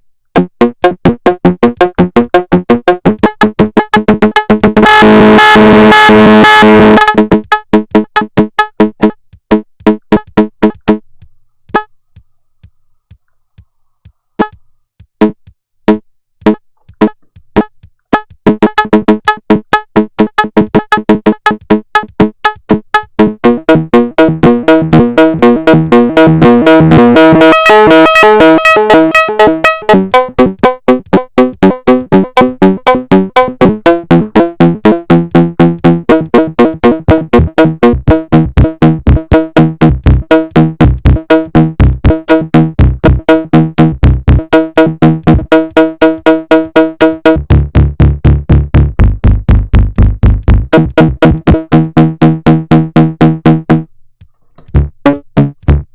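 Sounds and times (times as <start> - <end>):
synthesizer arpeggio: 0.4 - 9.1, 23.2 - 49.4.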